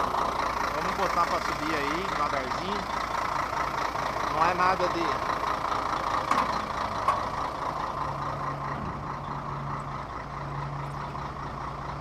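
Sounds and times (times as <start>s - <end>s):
truck diesel engine running: 0.0s - 12.0s.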